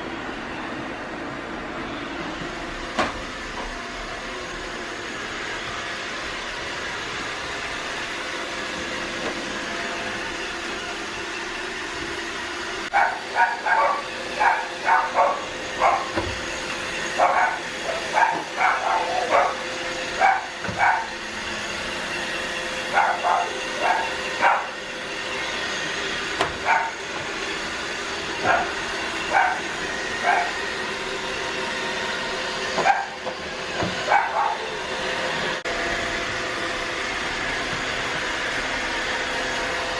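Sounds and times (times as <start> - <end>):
dog barking: 12.9 - 16.2, 17.2 - 19.6, 20.2 - 21.1, 22.9 - 24.8, 26.6 - 27.0, 28.4 - 29.6, 30.2 - 30.6, 32.8 - 33.2, 34.1 - 34.7.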